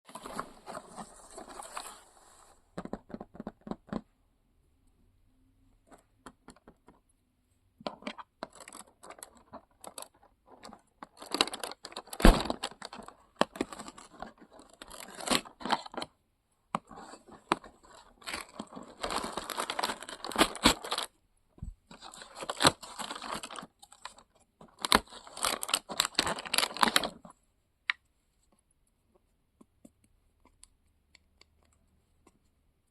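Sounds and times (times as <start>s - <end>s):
packaging tearing and crinkling: 11.1s - 16.1s, 17.8s - 21.1s, 21.9s - 27.2s.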